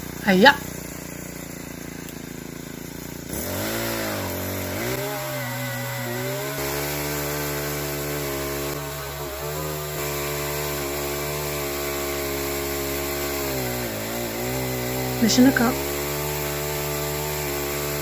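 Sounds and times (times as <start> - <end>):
chainsaw motor running: 0.0 - 18.0.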